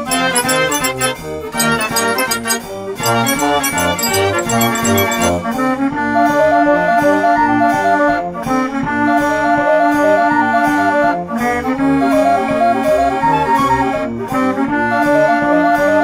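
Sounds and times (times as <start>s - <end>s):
upbeat background music: 0.0s - 5.6s.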